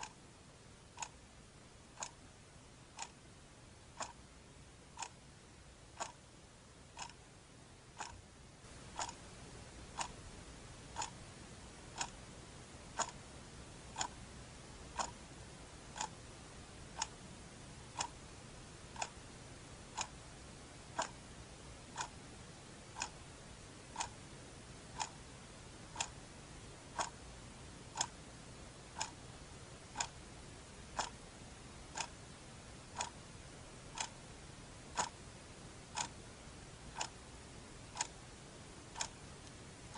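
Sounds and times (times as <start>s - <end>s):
clock ticking: 0.0s - 0.2s, 0.8s - 1.2s, 1.9s - 2.3s, 2.9s - 3.2s, 3.9s - 4.2s, 4.9s - 5.2s, 5.9s - 6.3s, 6.9s - 7.3s, 7.9s - 9.3s, 9.9s - 10.2s, 10.9s - 11.2s, 11.9s - 13.3s, 13.9s - 14.2s, 14.8s - 15.3s, 15.9s - 16.2s, 16.9s - 17.3s, 17.9s - 18.3s, 18.9s - 19.2s, 19.8s - 20.3s, 20.9s - 22.2s, 22.9s - 23.2s, 23.8s - 24.2s, 24.9s - 25.3s, 25.9s - 26.2s, 26.9s - 27.2s, 27.8s - 28.2s, 28.9s - 30.2s, 30.9s - 31.2s, 31.9s - 35.3s, 35.9s - 37.2s, 37.8s - 38.3s, 38.9s - 39.9s.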